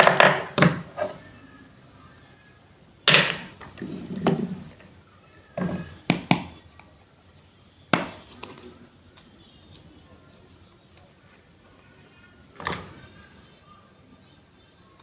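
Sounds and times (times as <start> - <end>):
wooden toys knocking on cutting board: 0.0 - 1.0.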